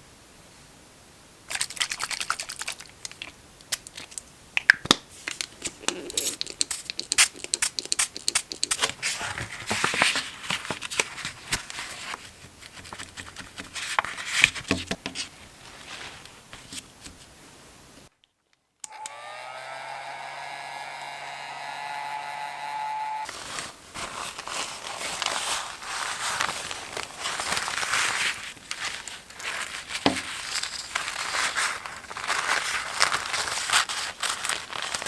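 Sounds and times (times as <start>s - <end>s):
paper tearing and crinkling: 5.6s - 14.5s, 23.2s - 35.0s.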